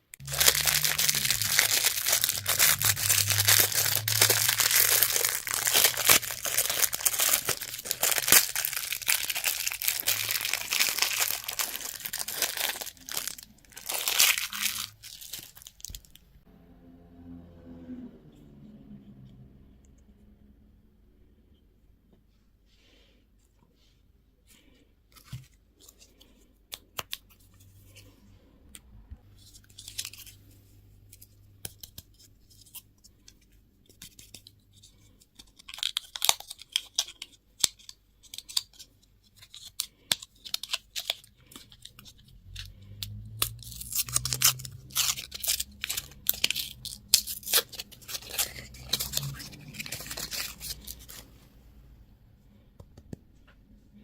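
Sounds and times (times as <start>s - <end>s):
plastic wrapping crinkling and tearing: 0.1s - 16.3s, 29.4s - 30.5s, 34.0s - 51.4s.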